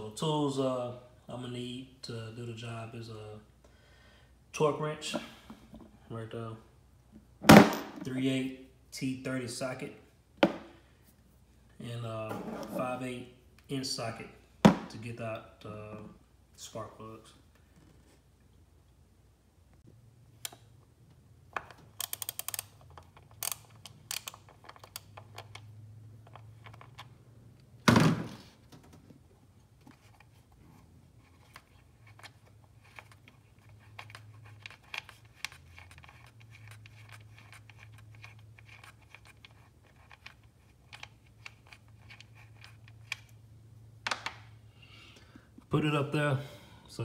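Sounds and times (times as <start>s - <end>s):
loud thunk: 7.4s - 8.0s, 27.9s - 28.4s.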